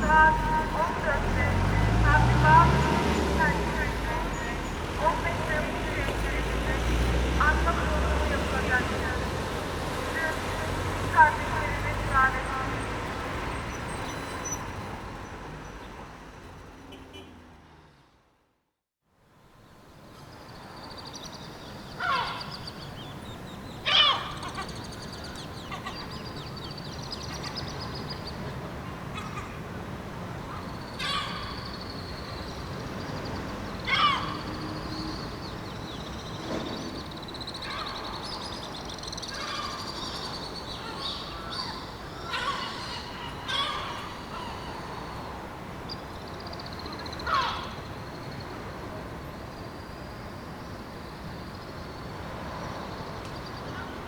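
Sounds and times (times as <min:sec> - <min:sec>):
small birds twittering: 0:00.0 - 0:16.8, 0:19.8 - 0:29.7, 0:30.4 - 0:54.0.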